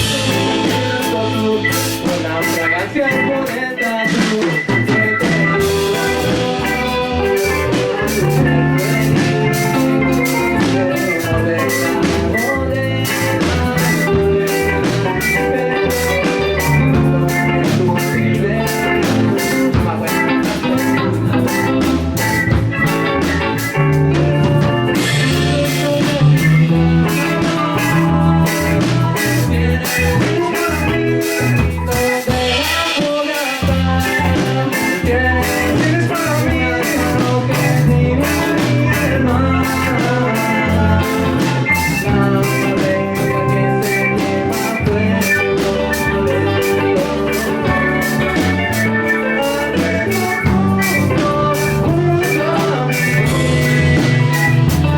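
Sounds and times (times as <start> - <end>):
live band playing: 0.0 - 54.9.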